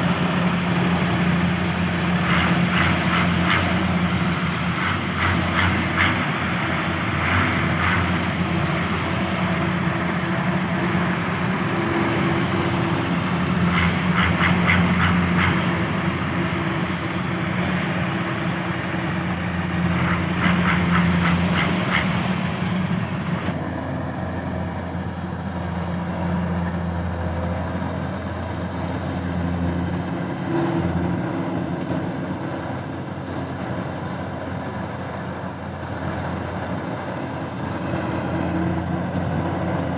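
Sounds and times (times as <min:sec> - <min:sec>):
diesel engine running: 0:00.0 - 0:39.9
rapid metallic clatter: 0:02.0 - 0:11.5, 0:12.6 - 0:23.6.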